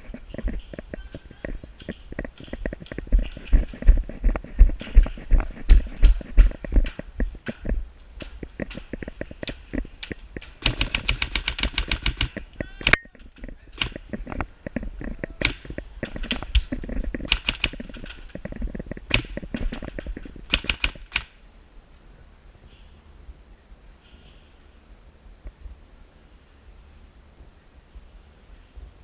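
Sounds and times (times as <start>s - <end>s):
airsoft guns firing: 10.5s - 13.0s, 17.2s - 18.1s, 19.1s - 21.3s.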